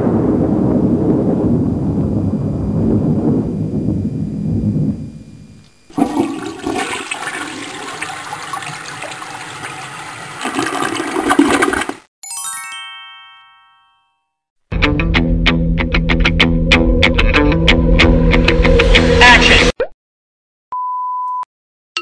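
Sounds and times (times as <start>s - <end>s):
toilet flushing: 5.9s - 12.1s
bright chime: 12.2s - 14.4s.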